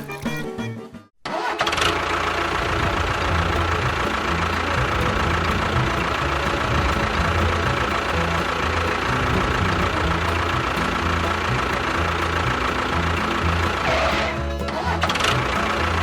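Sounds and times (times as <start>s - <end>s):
small motor running: 1.6s - 14.4s.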